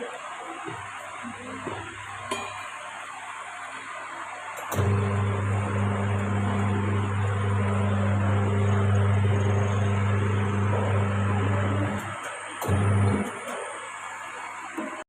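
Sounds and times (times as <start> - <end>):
electric motor humming: 4.8 - 13.4.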